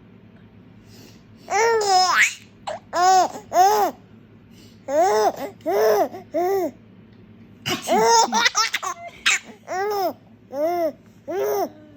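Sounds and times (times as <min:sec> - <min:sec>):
baby laughing: 0:01.5 - 0:04.0, 0:04.9 - 0:06.8, 0:07.7 - 0:11.8.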